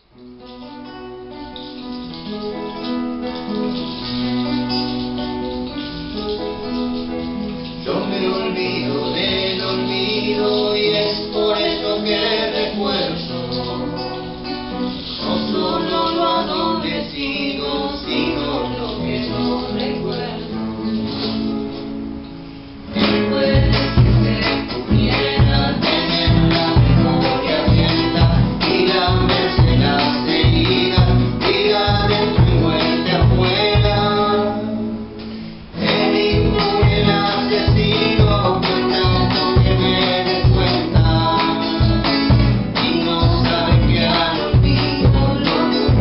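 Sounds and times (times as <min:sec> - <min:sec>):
acoustic guitar: 0:00.0 - 0:46.0
person singing: 0:07.7 - 0:21.5, 0:22.9 - 0:35.0, 0:35.8 - 0:46.0
steady drum beat: 0:23.0 - 0:34.2, 0:35.9 - 0:46.0.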